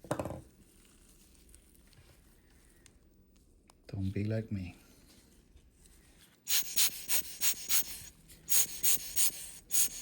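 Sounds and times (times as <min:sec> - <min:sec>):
quick puffs of air: 0:06.5 - 0:10.0.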